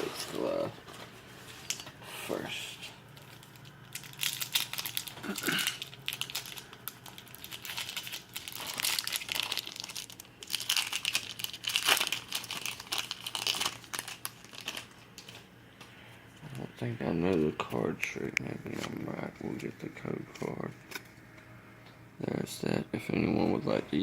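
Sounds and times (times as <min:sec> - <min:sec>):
foil wrapper crinkling: 0:03.1 - 0:15.5.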